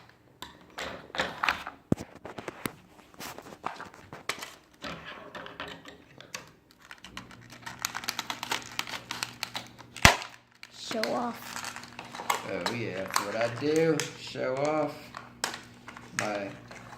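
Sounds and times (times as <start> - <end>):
plastic and cardboard crinkling: 1.2 - 16.9
scissors cutting plastic packaging: 6.8 - 16.9.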